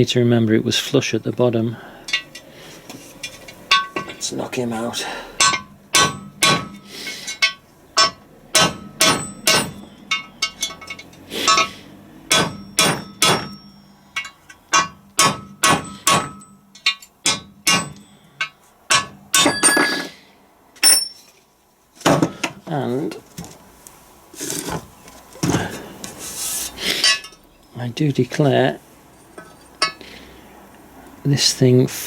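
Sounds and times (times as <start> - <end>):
hammer striking metal punch: 3.7 - 4.2, 5.4 - 20.0, 20.8 - 21.2.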